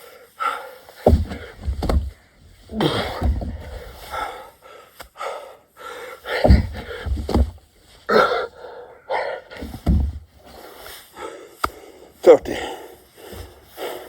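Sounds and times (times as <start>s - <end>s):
man panting heavily: 0.0s - 1.7s, 2.7s - 7.3s, 8.1s - 9.7s, 10.4s - 14.0s
dull low thumps: 1.0s - 4.4s, 6.3s - 7.8s, 9.5s - 10.4s.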